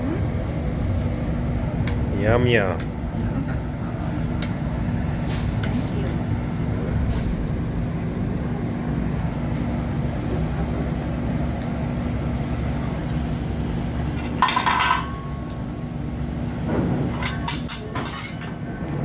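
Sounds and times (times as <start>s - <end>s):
restaurant rumble and hum: 0.0s - 19.0s
dishes and utensils clinking: 14.2s - 15.5s, 17.0s - 18.8s.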